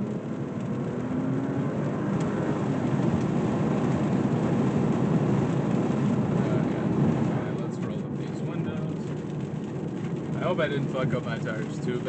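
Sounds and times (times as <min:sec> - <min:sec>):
car engine accelerating: 0:00.0 - 0:12.0.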